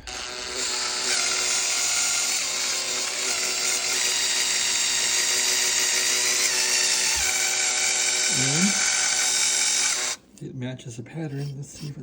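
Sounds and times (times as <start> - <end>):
electric drill whining: 0.0 - 10.2.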